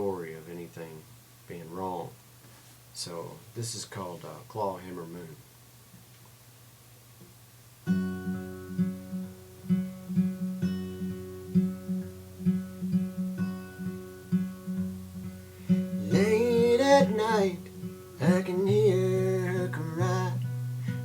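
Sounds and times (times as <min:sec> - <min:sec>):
acoustic guitar riff: 0:07.8 - 0:21.0.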